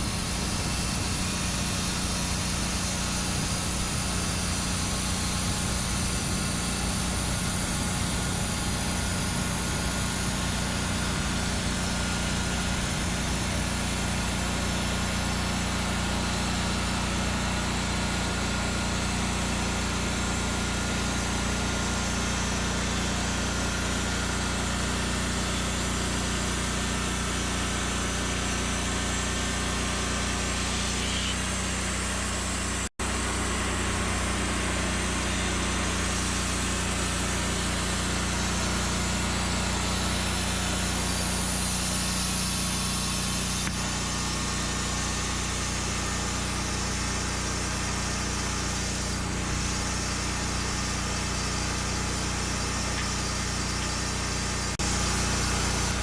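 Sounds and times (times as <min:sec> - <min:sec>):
small gasoline engine running: 0:00.0 - 0:56.0.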